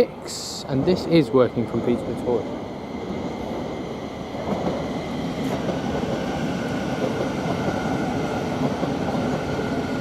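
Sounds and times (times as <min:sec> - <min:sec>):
electric train arriving: 0:00.0 - 0:10.0.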